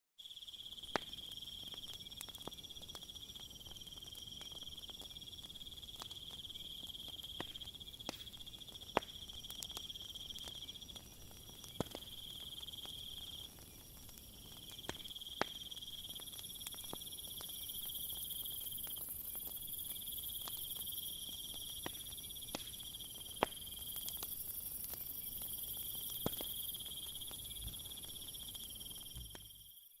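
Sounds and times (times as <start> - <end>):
crickets trilling: 0.2 - 30.0
campfire popping and crackling: 0.7 - 29.7
high-pitched insect sound: 15.0 - 30.0.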